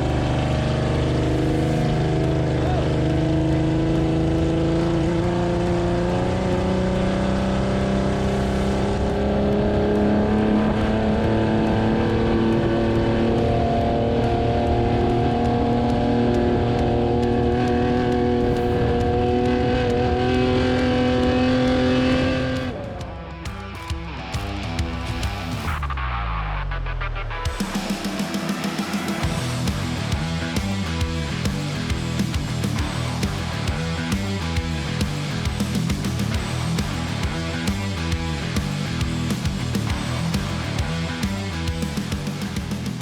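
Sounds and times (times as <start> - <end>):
race truck engine running hard: 0.0 - 22.7.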